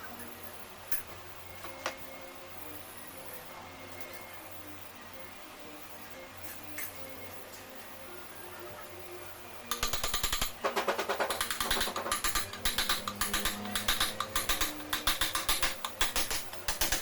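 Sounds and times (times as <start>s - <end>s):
rapid clatter of sharp knocks: 9.7s - 17.0s.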